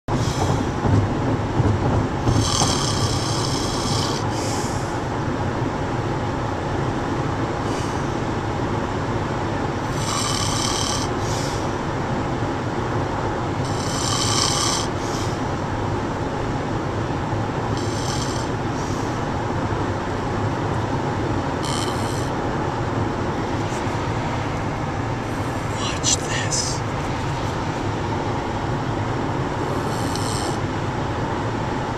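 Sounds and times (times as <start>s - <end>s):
car cabin rumble: 0.1s - 5.8s
man snoring: 2.3s - 4.3s, 9.9s - 11.4s, 13.7s - 15.3s, 17.8s - 18.6s, 21.6s - 22.3s, 29.6s - 30.6s.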